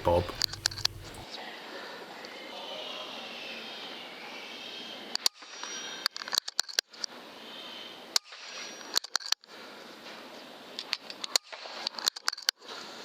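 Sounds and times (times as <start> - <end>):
sharp clicks and pops: 0.0 - 1.2
steady background hiss: 0.0 - 1.2.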